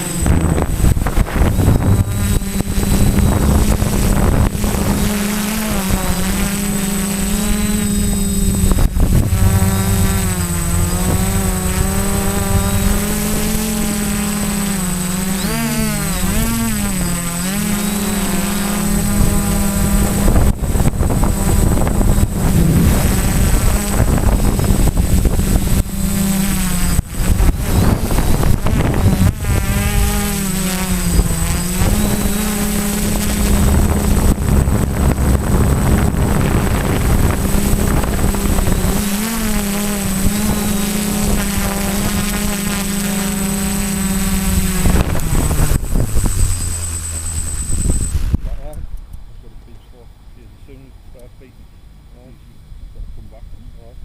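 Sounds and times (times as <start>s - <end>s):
wind noise: 0.0s - 49.5s
drone propellers buzzing: 0.0s - 54.0s.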